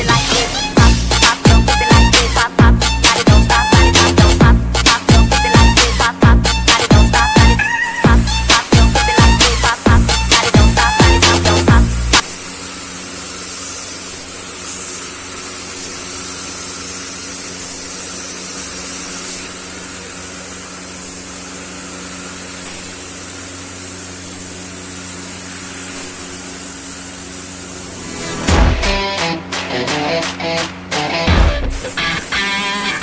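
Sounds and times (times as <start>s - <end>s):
spray-painting equipment air hiss: 0.0s - 29.8s, 31.7s - 33.0s
low machine hum: 0.0s - 32.3s
background music: 28.2s - 31.7s.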